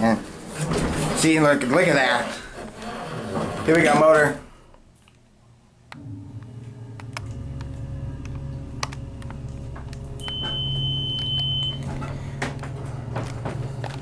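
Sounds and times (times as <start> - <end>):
elevator motor humming: 6.0 - 14.0
long high-pitched beep: 10.2 - 11.8.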